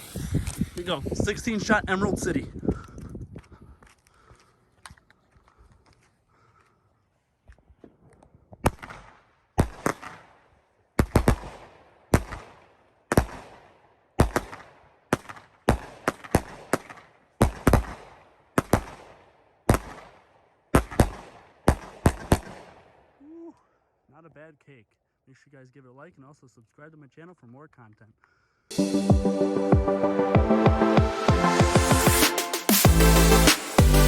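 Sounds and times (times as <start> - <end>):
firework bangs: 0.0 - 1.2.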